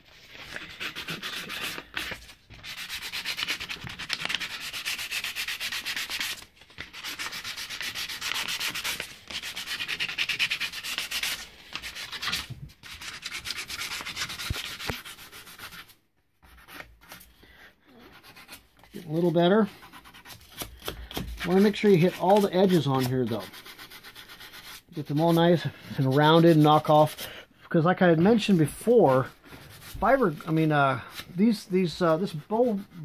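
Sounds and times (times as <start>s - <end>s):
sandpaper rubbing on horn: 0.5s - 15.9s, 21.4s - 27.4s, 28.5s - 33.0s.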